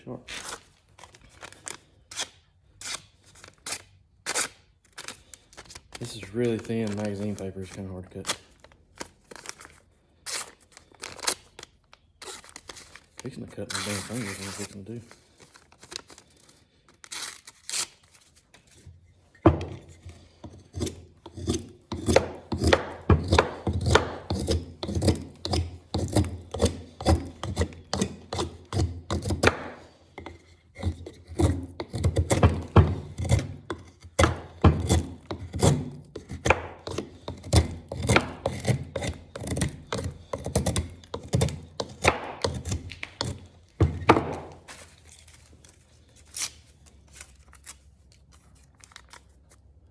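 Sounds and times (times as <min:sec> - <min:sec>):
knife cutting strokes: 0:19.6 - 0:44.9.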